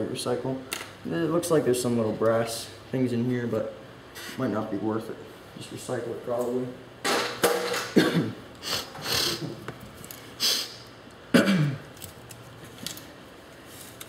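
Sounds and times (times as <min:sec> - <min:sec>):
fan humming: 0:00.0 - 0:14.0
sniffs: 0:08.6 - 0:09.5, 0:10.4 - 0:10.8.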